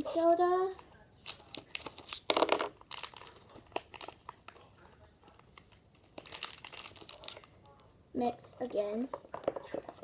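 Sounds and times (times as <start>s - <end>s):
packaging crinkling and rustling: 0.0s - 7.6s.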